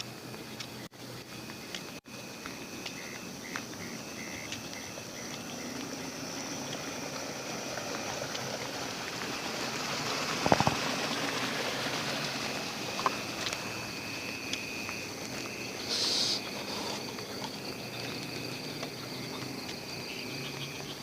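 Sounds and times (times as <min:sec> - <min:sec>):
insects chirping: 0:00.0 - 0:21.0
rapid pulsed insect call: 0:00.0 - 0:21.0
rushing hiss: 0:15.8 - 0:17.1.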